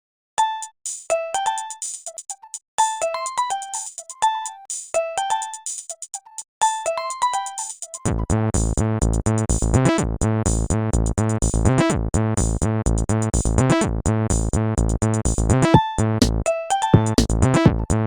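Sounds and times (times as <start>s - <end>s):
electronic ringtone melody: 0.4s - 8.0s
synthesized tune with beat: 0.4s - 8.2s, 15.7s - 18.0s.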